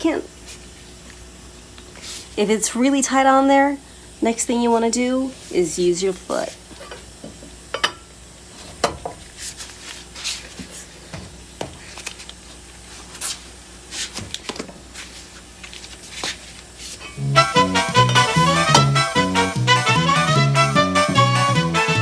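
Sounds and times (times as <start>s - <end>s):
swing music: 17.2s - 22.0s.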